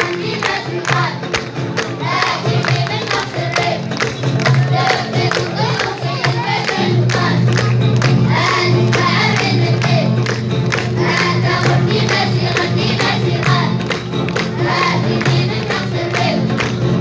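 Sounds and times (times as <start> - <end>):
group singing: 0.0 - 17.0
percussive beat: 0.0 - 17.0
low held accompaniment notes: 3.8 - 17.0.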